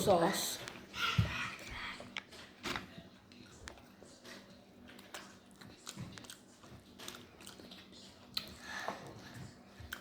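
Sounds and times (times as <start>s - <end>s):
faint eating clicks and handling: 2.1s - 8.6s.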